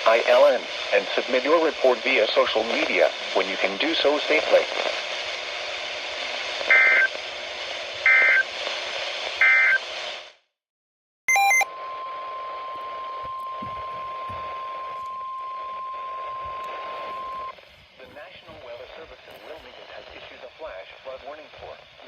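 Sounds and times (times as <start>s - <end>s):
radio static hiss: 0.0s - 10.5s, 11.7s - 22.0s
steady warning alarm tone: 11.3s - 17.5s
two-tone data squawks: 11.3s - 17.5s.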